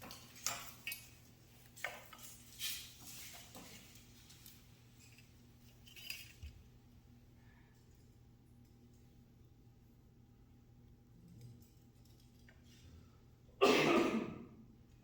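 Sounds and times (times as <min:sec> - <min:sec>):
faint clinks and knocks: 0:00.0 - 0:06.8
low steady hum: 0:00.0 - 0:15.0.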